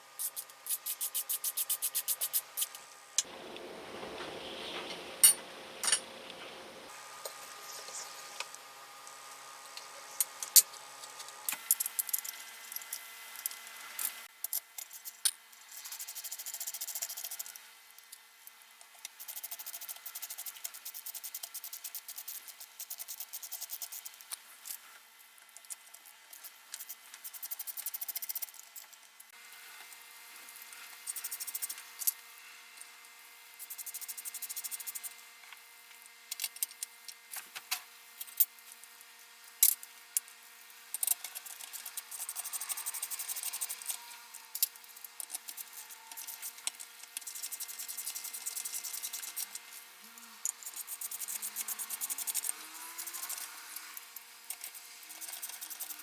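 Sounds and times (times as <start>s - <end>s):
hand rubbing a part: 0.2s - 2.7s.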